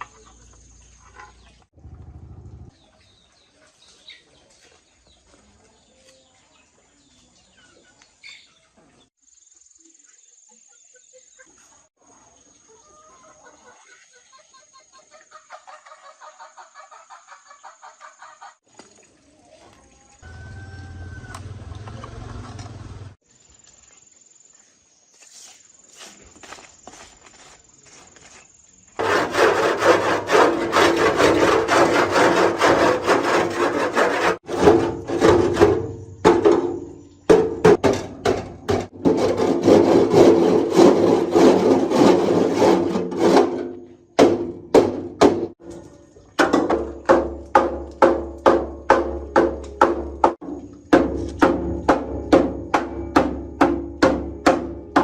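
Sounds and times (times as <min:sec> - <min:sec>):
hand file rasping: 0:29.0 - 0:34.6, 0:38.9 - 0:43.4.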